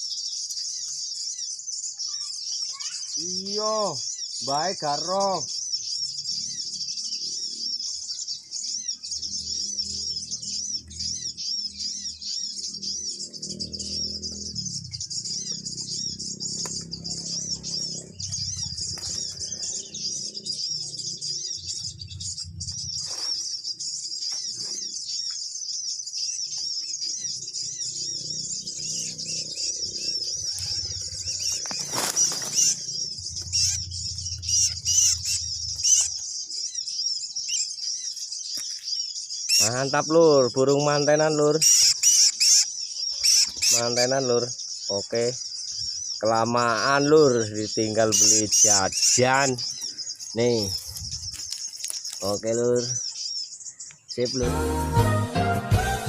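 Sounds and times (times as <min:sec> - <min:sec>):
small birds chirping: 0:00.0 - 0:56.0.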